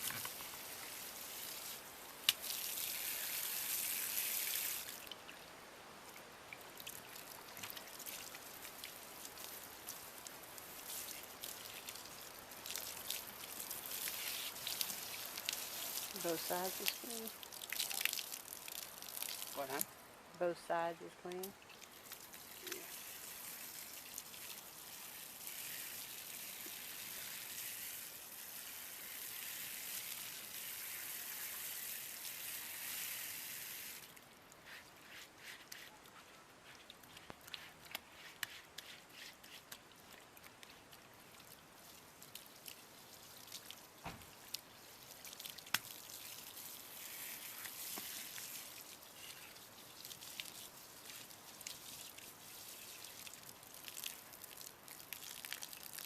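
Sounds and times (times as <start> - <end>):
water drips: 0.0 - 3.6, 4.4 - 20.0, 21.3 - 25.7, 39.7 - 56.0
water running: 10.8 - 19.9.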